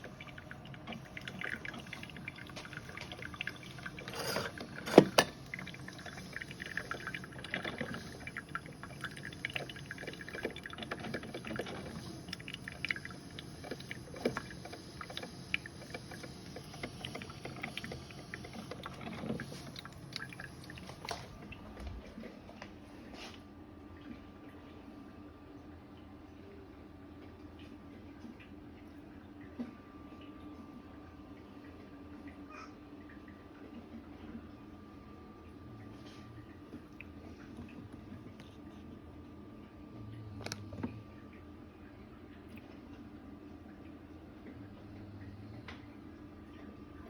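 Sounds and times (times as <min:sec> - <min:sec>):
coffee being poured: 0:00.0 - 0:21.8.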